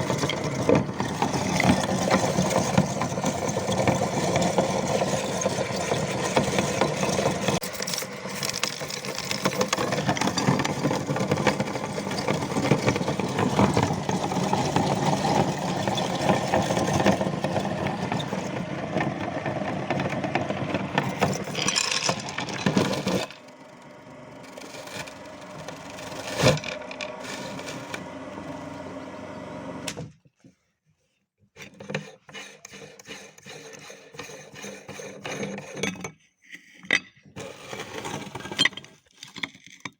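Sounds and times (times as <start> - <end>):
electric meat grinder rattling: 0.0 - 29.9.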